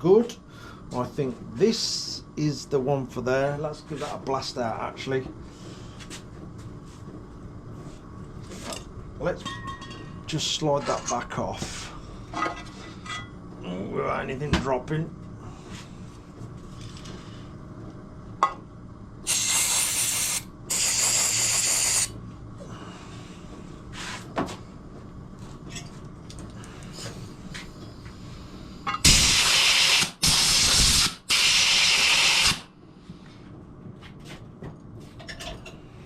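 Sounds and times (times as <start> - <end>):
compressed air blasts hissing: 19.2 - 22.1, 29.0 - 32.7.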